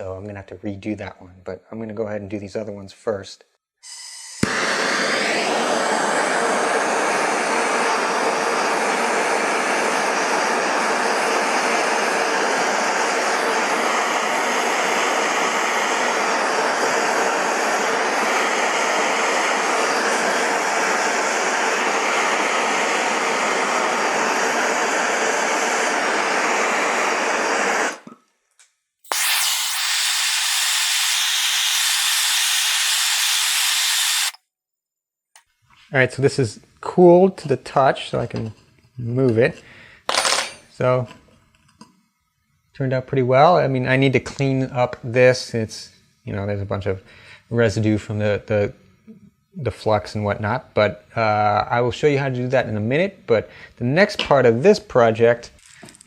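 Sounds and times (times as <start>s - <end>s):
hand torch hissing: 4.4s - 28.0s, 29.1s - 34.4s
thin high hiss: 29.1s - 34.4s.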